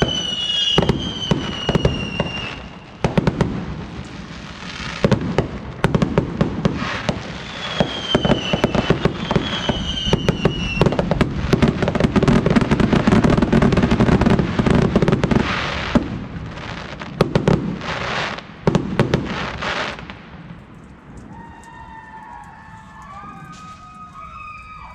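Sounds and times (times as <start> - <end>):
whistling rockets: 0.0 - 16.2, 21.2 - 24.9
fireworks bangs and crackling: 0.0 - 24.9.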